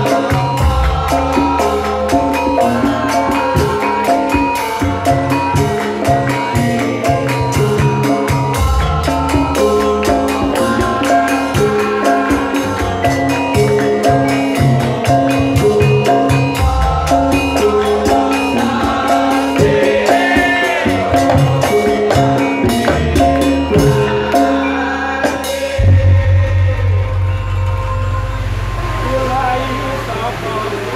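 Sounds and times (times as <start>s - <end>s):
fast dense percussion: 0.0s - 30.9s
group singing: 0.0s - 30.9s
low hum: 25.8s - 30.9s.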